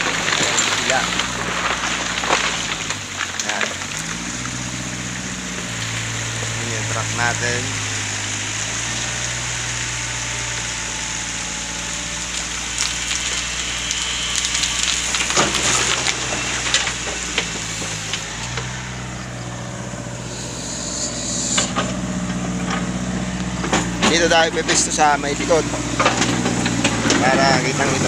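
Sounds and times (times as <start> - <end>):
bucket scraping and clattering: 0.0 - 7.9, 12.6 - 28.0
sand pouring: 0.0 - 22.2
heavy machinery engine running: 0.0 - 28.0.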